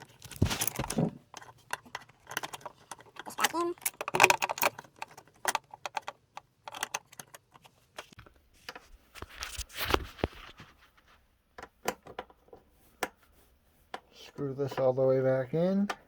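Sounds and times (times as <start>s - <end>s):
small parts clicking and tapping: 0.0s - 8.8s
rustle and knock of handling: 0.0s - 16.0s.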